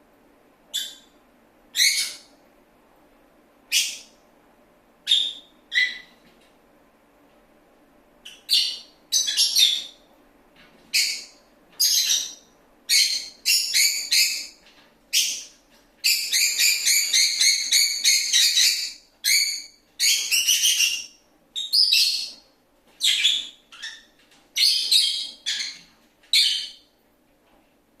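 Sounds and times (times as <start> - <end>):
lovebird chirping: 0.7 - 2.3, 3.7 - 4.1, 5.0 - 6.2, 8.2 - 10.0, 10.9 - 22.4, 23.0 - 26.9.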